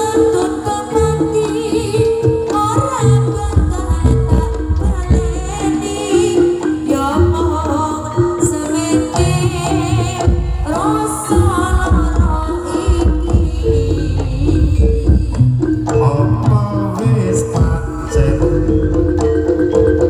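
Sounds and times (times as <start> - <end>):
person singing: 0.0 - 19.2
hand drums beating: 0.0 - 20.0
metallophone notes: 0.0 - 20.0.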